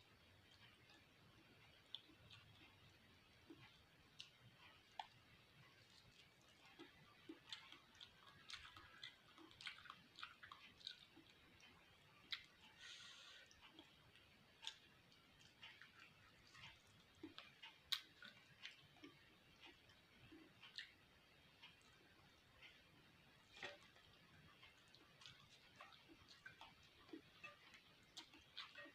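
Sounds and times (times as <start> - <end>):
wet chewing: 0.4 - 28.9.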